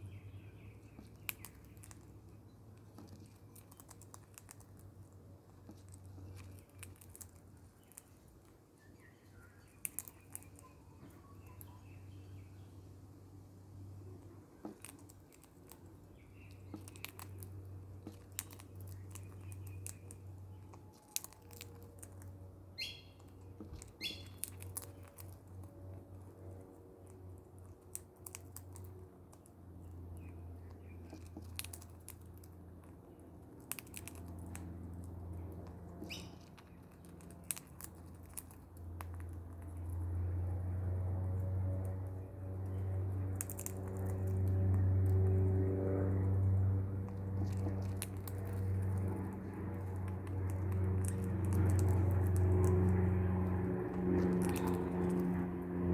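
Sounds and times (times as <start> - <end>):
low hum: 0.0 - 55.9
parrot beak crunching food: 0.8 - 11.8, 14.0 - 55.9
parrot chirps: 22.8 - 23.2, 24.0 - 24.4.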